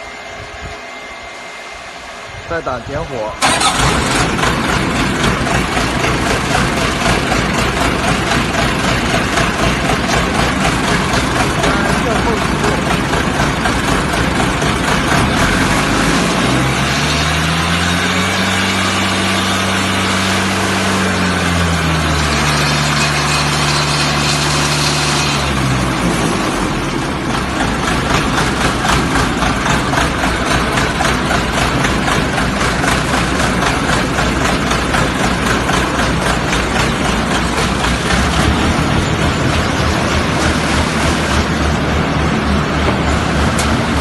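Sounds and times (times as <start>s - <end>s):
diesel engine running: 0.0s - 44.0s
deep hum rising in pitch: 36.1s - 44.0s.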